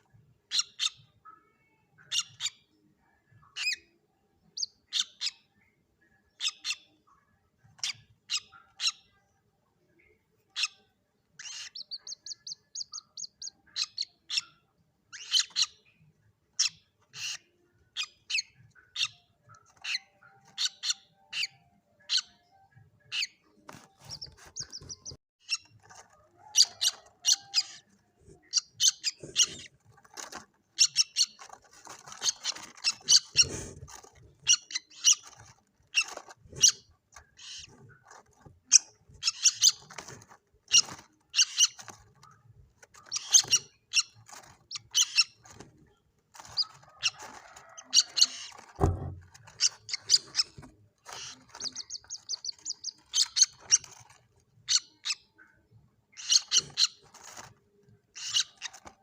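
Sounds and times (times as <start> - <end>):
bird chicks chirping: 0.0 - 59.0
low thump: 48.8 - 49.3.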